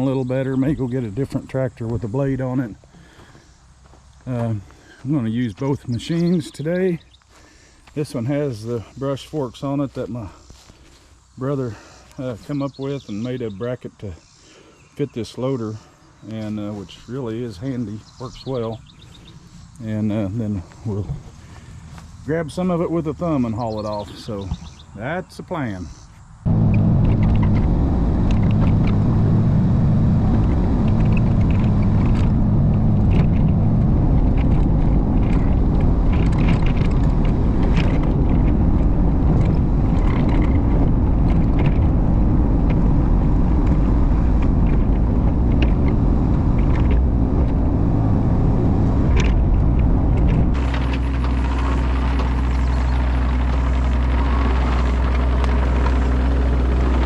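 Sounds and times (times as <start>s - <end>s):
earthmoving machine engine running: 26.4s - 57.0s.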